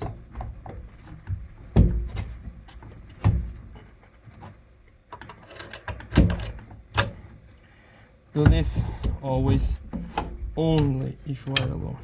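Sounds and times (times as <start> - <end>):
tools clicking and rattling: 5.1 - 7.2.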